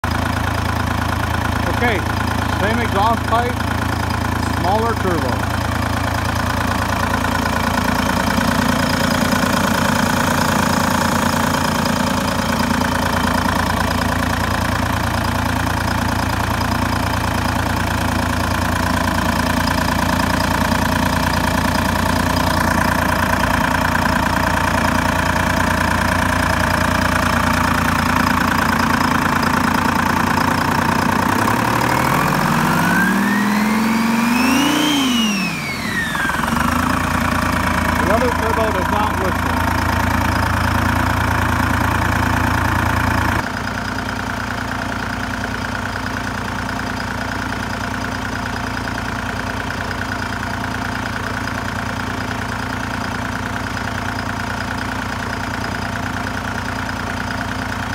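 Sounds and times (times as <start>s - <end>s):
car engine idling and revving: 0.0s - 57.9s.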